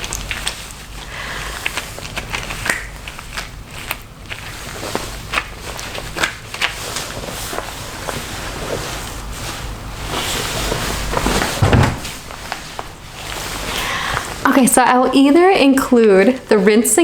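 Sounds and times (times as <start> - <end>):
rustling and squishing hair: 0.0 - 17.0
low thump: 11.6 - 12.2.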